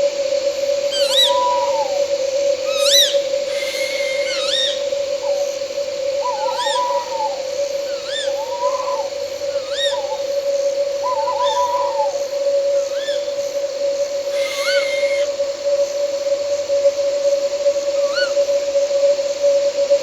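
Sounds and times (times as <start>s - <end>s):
night insects droning: 0.0s - 20.0s
owl calling: 0.8s - 15.5s, 18.0s - 18.5s.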